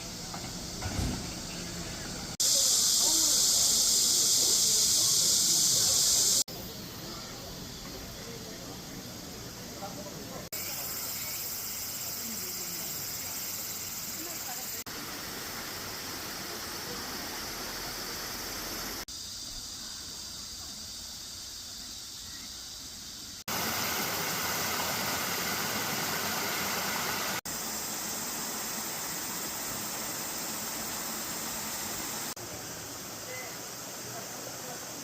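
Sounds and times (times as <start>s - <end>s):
stream water rushing: 23.5s - 32.4s.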